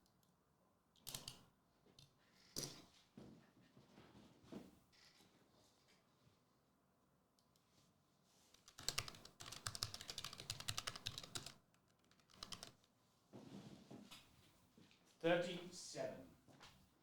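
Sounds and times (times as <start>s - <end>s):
typing on computer keyboard: 1.0s - 1.4s, 8.6s - 12.9s.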